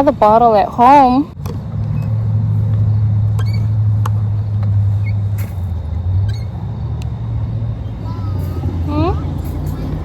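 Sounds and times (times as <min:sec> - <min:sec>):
car engine and road rumble: 0:00.0 - 0:10.0
faint clicks and squeaks: 0:03.3 - 0:04.2, 0:05.0 - 0:07.2.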